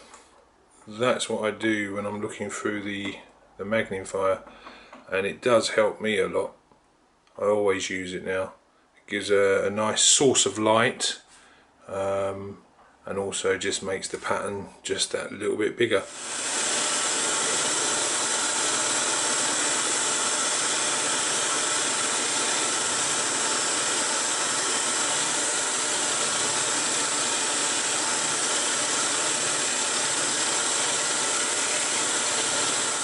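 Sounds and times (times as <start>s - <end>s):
scroll saw cutting wood: 16.1s - 33.0s.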